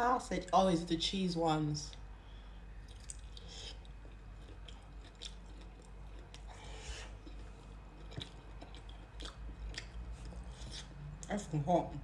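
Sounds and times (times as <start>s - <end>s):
low steady hum: 0.0s - 12.0s
person biting and chewing: 2.9s - 11.0s.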